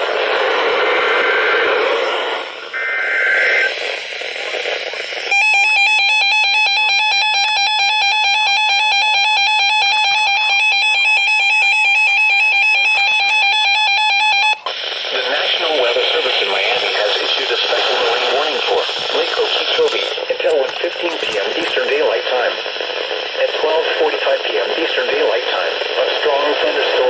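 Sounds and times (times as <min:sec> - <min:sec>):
radio static hiss: 0:00.0 - 0:05.6, 0:14.6 - 0:27.0.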